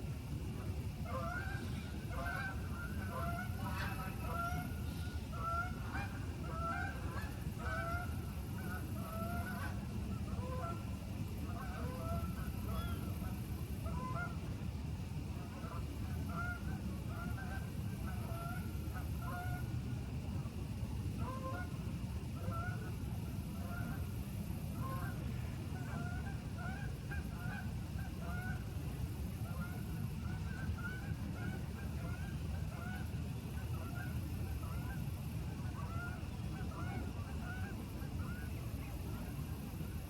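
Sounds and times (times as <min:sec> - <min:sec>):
geese honking: 0:01.1 - 0:04.7, 0:05.3 - 0:10.8, 0:11.5 - 0:13.0, 0:15.5 - 0:19.6, 0:21.2 - 0:21.7, 0:24.8 - 0:25.2, 0:25.8 - 0:28.6, 0:29.4 - 0:35.0, 0:35.6 - 0:38.4.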